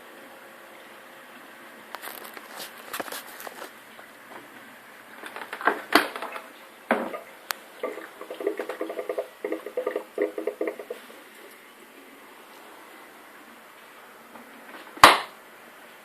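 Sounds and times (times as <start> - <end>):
dishwasher rhythmic pulsing: 6.9 - 11.1.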